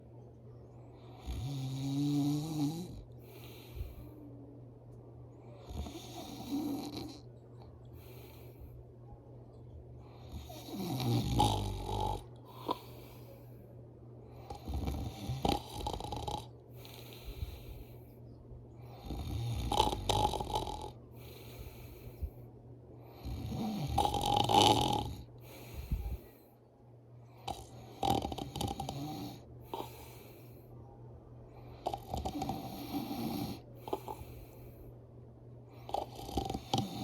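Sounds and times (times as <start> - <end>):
person snoring loudly: 1.2 - 3.0, 10.3 - 12.9, 14.5 - 17.0, 19.0 - 21.0, 23.2 - 25.3, 27.5 - 30.1, 31.8 - 34.2, 35.9 - 37.0.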